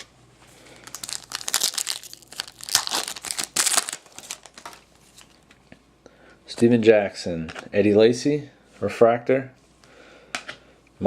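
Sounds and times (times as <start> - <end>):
foil wrapper crinkling: 0.6 - 5.5.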